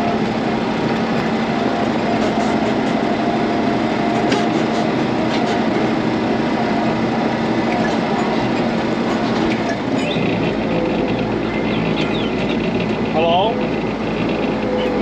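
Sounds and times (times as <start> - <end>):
excavator engine running: 0.0 - 15.0
machine rattling and clatter: 6.8 - 15.0.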